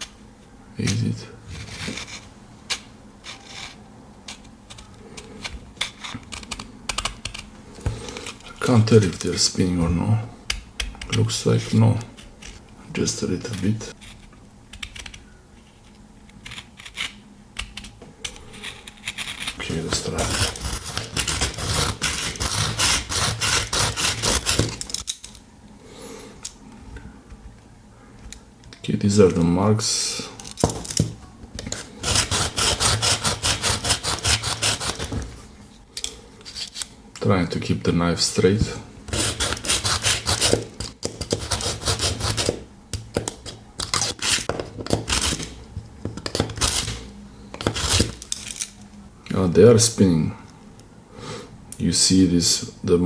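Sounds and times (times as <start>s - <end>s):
knife rasping through sharpener: 19.0s - 24.8s, 31.8s - 35.1s, 39.1s - 40.6s, 41.3s - 42.6s
knife scraping through sharpener: 39.1s - 40.6s.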